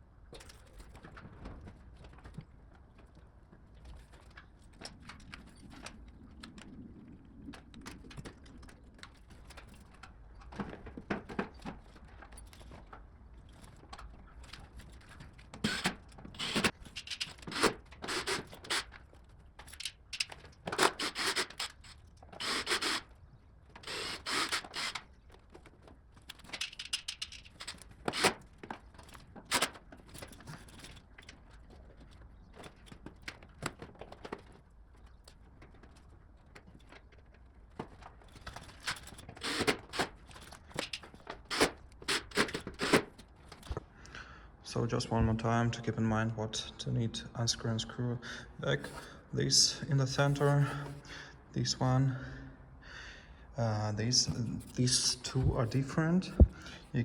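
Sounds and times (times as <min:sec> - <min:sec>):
parts scraping and rustling: 0:03.8 - 0:43.9, 0:48.7 - 0:51.1, 0:54.0 - 0:57.0.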